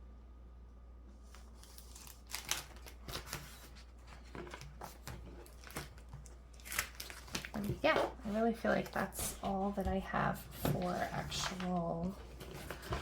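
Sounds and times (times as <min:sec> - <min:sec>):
sticker sheets being peeled: 0:01.3 - 0:03.7
paper rustling and clicking: 0:01.3 - 0:08.1, 0:08.8 - 0:13.0.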